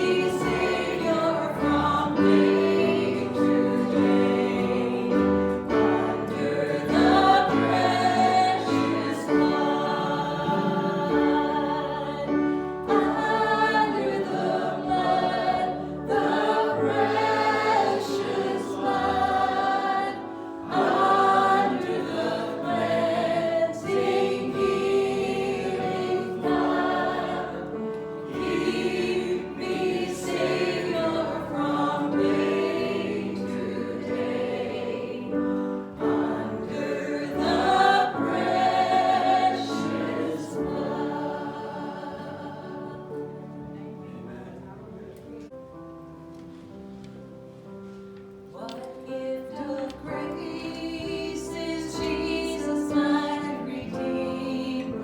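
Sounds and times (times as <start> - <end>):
group singing gospel: 0.0 - 44.6, 47.8 - 55.0.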